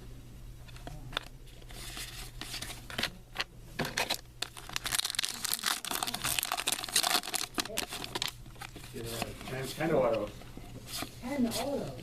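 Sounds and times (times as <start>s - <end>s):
wrappers crinkling: 4.4s - 10.3s
cards being handled: 6.2s - 12.0s.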